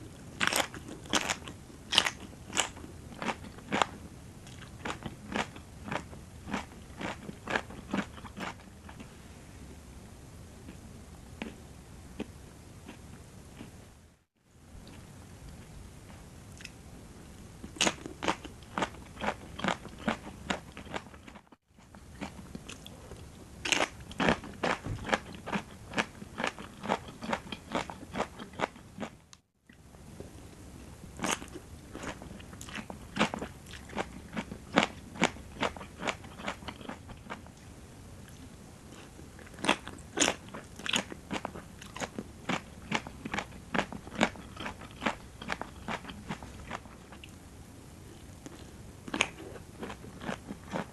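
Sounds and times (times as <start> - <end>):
crisp chewing crunches: 0.4 - 9.1, 17.6 - 29.2, 31.2 - 37.6, 38.3 - 47.4, 48.1 - 50.9.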